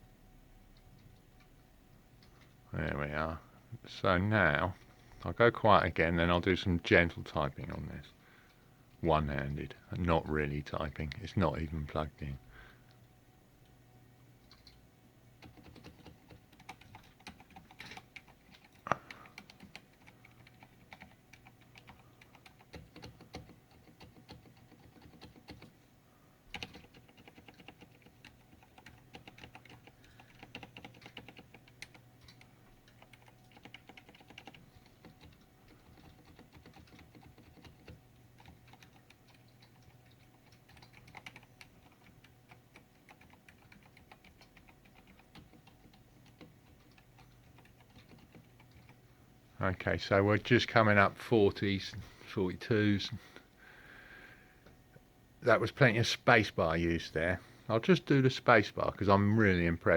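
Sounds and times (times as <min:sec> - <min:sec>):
keyboard typing: 0:14.4 - 0:14.8, 0:15.4 - 0:25.8, 0:26.5 - 0:49.0.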